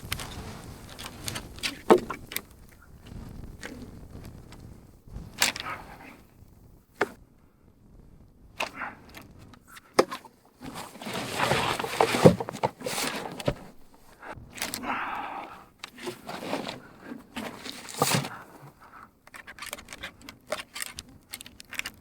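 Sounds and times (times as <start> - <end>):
gear knocking and rustling: 9.2 - 22.0.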